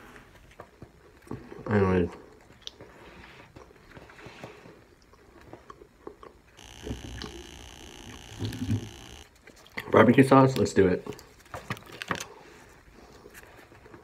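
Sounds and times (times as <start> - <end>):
brief low hums: 6.6 - 9.3
small clicks: 6.6 - 9.3.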